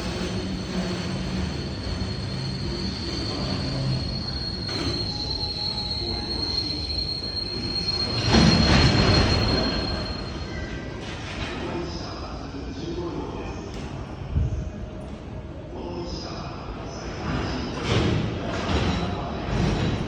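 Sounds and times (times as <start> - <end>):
train wheels squealing: 0.0 - 11.7, 18.5 - 20.0
rumble of freight wagons: 0.0 - 11.8.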